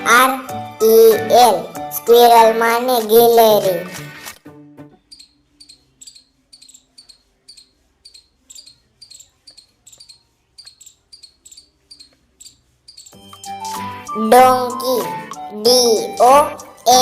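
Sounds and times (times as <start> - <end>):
squirrel chirping: 5.0 - 17.0.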